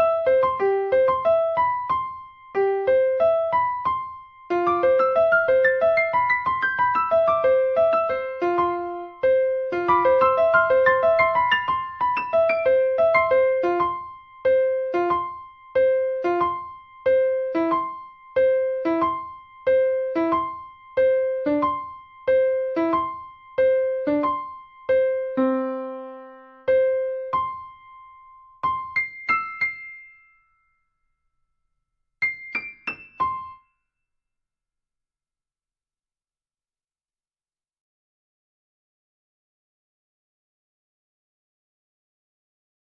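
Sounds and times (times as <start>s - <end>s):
solo piano playing: 0.0s - 30.6s, 32.2s - 33.7s.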